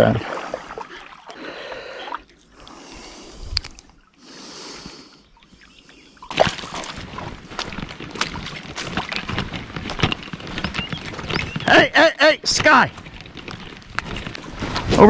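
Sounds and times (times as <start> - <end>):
water splashing and sloshing: 0.0 - 11.7.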